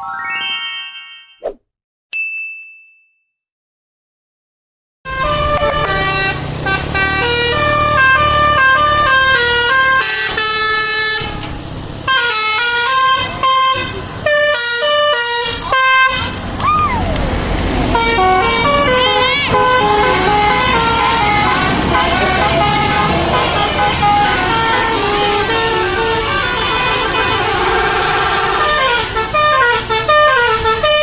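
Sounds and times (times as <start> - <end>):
musical bus air horn tune: 5.1 - 16.4, 17.8 - 31.0.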